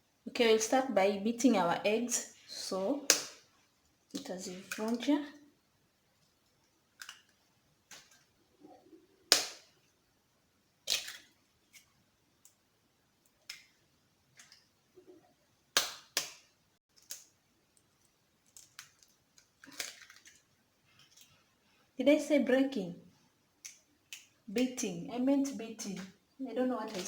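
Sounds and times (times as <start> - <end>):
eggshells cracking: 6.6 - 8.4, 10.8 - 11.8, 15.7 - 21.5, 23.6 - 24.6.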